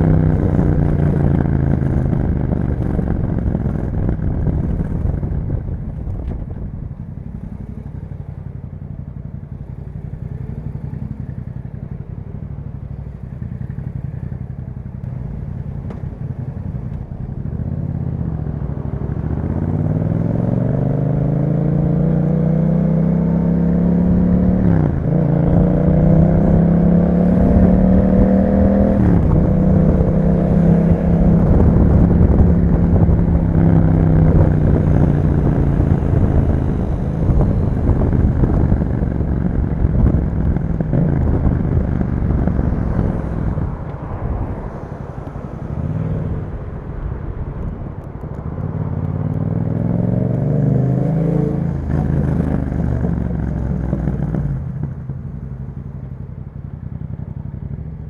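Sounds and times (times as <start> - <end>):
motorcycle engine accelerating: 0.0 - 58.0
gear upshifts: 23.3 - 55.1.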